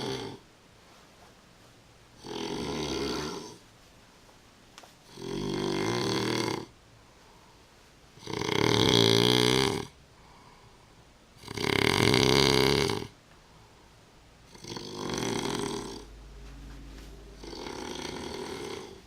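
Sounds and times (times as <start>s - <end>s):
man snoring loudly: 0.0s - 0.4s, 2.2s - 3.6s, 5.1s - 6.7s, 8.2s - 9.9s, 11.4s - 13.1s, 14.5s - 16.1s, 17.4s - 19.0s.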